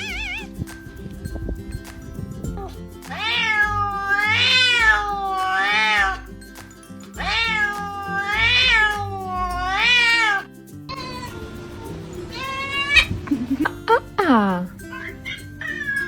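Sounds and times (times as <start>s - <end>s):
cat meowing: 0.0s - 0.6s, 3.1s - 6.3s, 7.2s - 13.3s, 14.8s - 16.0s
background music: 0.0s - 16.0s.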